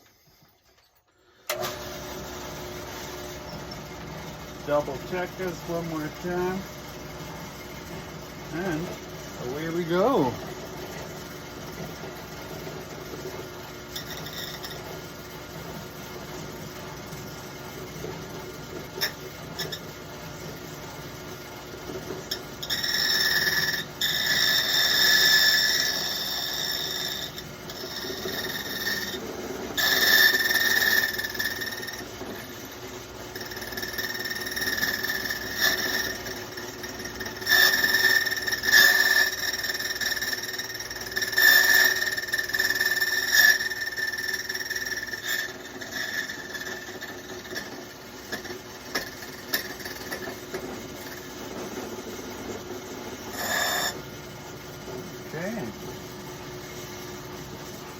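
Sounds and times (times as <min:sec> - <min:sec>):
cutter wheel squealing on metal: 0:08.5 - 0:10.4, 0:13.9 - 0:14.9, 0:19.0 - 0:19.9, 0:22.2 - 0:32.6, 0:33.3 - 0:51.4, 0:53.2 - 0:54.0.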